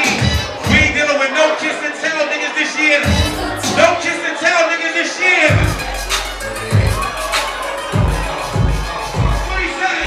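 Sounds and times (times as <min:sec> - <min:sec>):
loud hip hop music: 0:00.0 - 0:10.0
rapped vocal: 0:03.0 - 0:04.2, 0:05.5 - 0:10.0.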